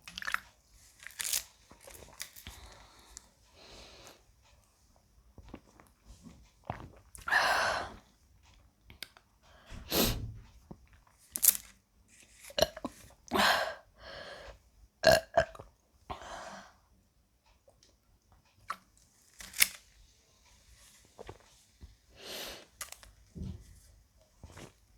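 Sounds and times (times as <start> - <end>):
woman burping: 15.0 - 15.6.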